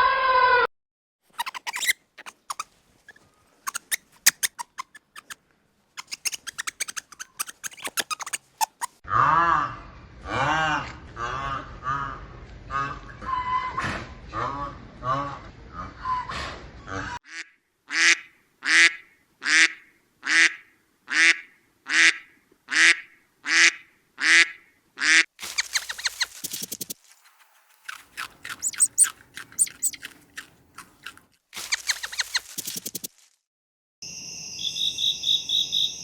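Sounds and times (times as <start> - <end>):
high clicking and chirping calls: 1.4 - 5.4, 6.0 - 9.0, 25.4 - 33.1.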